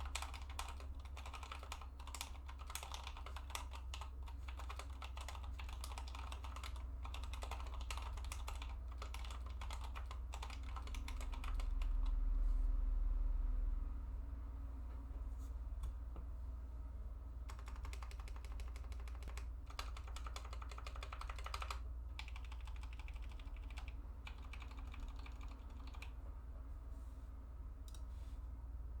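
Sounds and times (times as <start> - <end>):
mechanical keyboard typing: 0.0 - 12.1, 17.5 - 26.2
steady low hum: 0.0 - 29.0.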